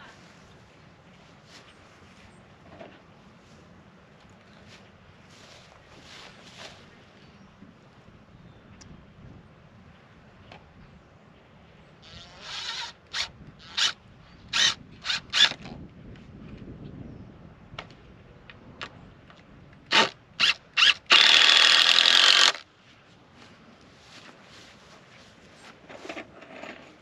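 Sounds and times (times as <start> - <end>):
cordless drill driving screws: 12.1 - 14.0, 14.6 - 15.6, 19.9 - 22.6.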